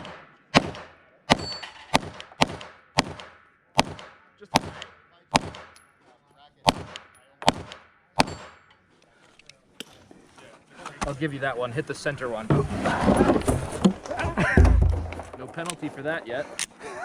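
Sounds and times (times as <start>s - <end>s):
gunshots: 0.0s - 5.8s, 6.6s - 8.7s.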